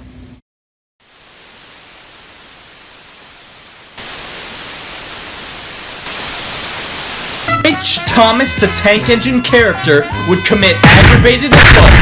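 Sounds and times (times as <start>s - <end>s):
static hiss: 1.0s - 7.5s.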